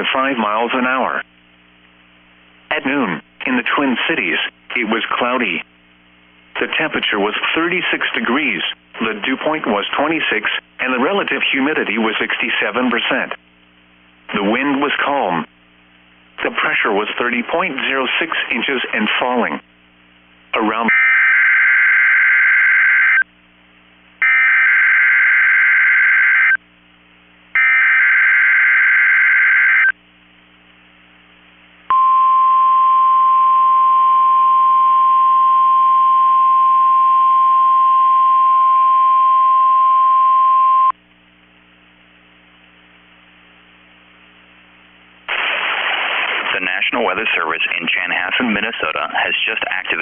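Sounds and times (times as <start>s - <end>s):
steady warning alarm tone: 24.2s - 26.6s, 27.6s - 29.9s.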